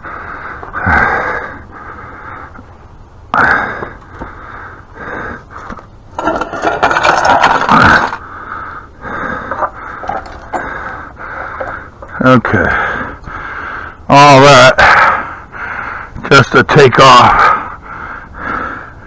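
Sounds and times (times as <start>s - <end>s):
metal tools scraping and knocking: 6.2s - 8.1s.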